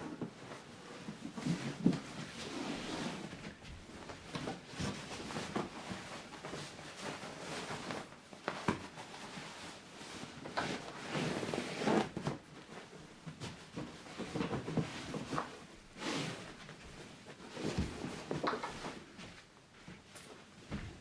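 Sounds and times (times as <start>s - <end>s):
knocks and clatters of objects: 16.8s - 19.2s.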